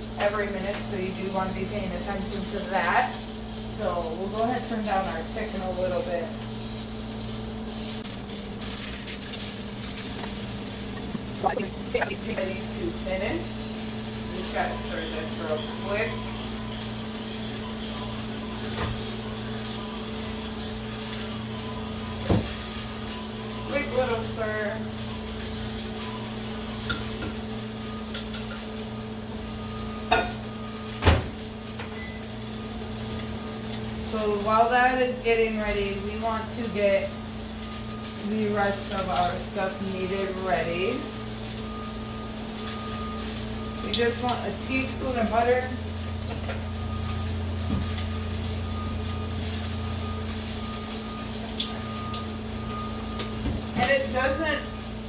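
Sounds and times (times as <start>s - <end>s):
microwave oven humming: 0.0s - 55.0s
steady hum: 7.9s - 17.4s
faint high tone: 11.4s - 12.6s.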